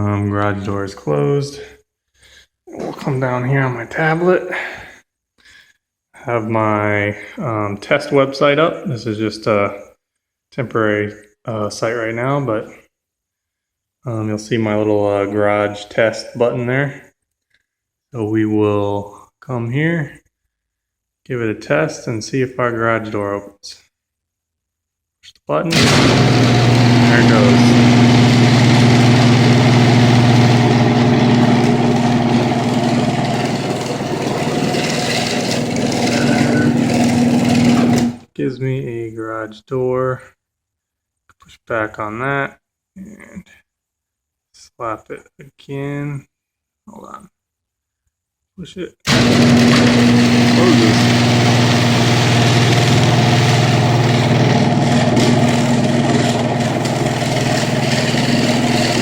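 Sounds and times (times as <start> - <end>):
garage door opener motor hum: 25.7 - 38.2, 49.1 - 59.0
garage door rattling: 29.3 - 38.2.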